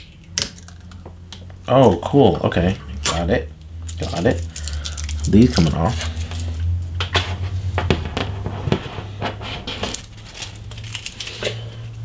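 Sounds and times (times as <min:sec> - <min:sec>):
small hard parts clicking: 0:03.8 - 0:07.1.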